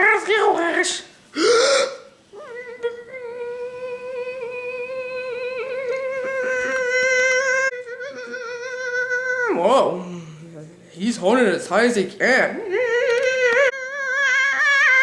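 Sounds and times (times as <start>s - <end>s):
person humming high note: 1.4s - 10.4s, 12.6s - 15.0s.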